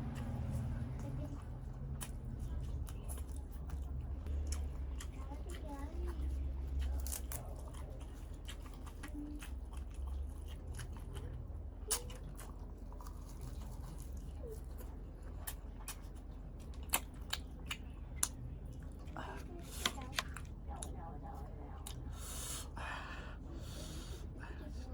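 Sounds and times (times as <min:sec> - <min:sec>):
steady low hum: 0:00.0 - 0:24.9
person chewing wet mouth clicks: 0:01.9 - 0:11.3, 0:11.9 - 0:20.9.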